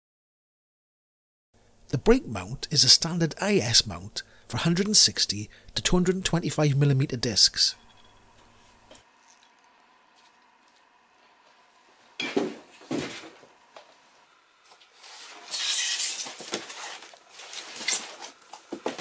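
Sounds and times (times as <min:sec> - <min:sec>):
rustling: 0:14.7 - 0:19.0.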